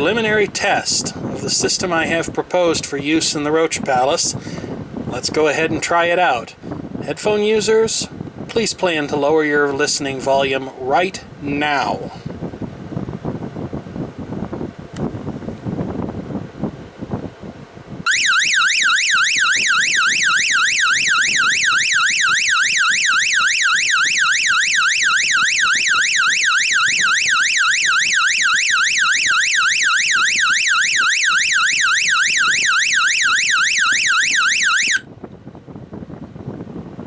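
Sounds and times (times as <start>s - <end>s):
warbling electronic alarm siren: 18.1s - 35.1s.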